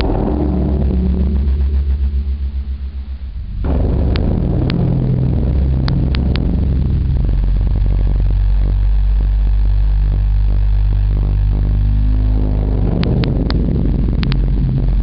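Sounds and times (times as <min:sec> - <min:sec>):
microphone crackle clicks: 0:03.6 - 0:10.3, 0:11.1 - 0:15.0.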